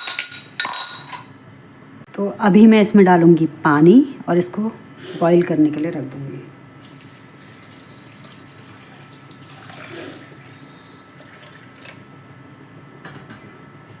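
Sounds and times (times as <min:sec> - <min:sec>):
water pouring into a pot: 0:06.8 - 0:12.1.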